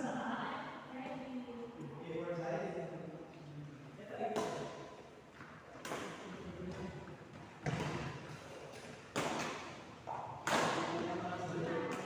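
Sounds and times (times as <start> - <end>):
ball impacts in echoing court: 4.2 - 11.2.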